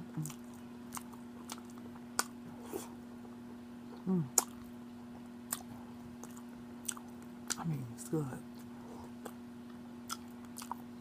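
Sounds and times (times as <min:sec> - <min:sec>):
steady low hum: 0:00.0 - 0:11.0
person humming: 0:04.0 - 0:04.5
wet lip smacks while chewing: 0:10.1 - 0:10.8.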